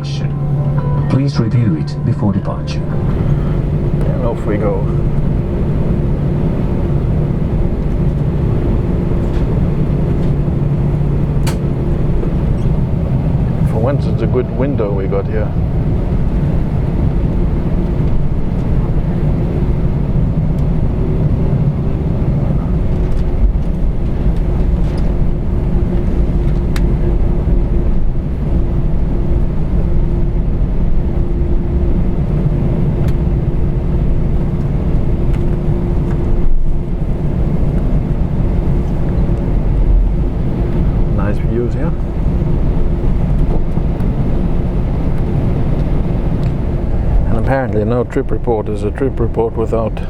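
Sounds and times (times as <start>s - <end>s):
constant hum tone: 0.0s - 50.0s
jet engines rumbling: 0.0s - 50.0s.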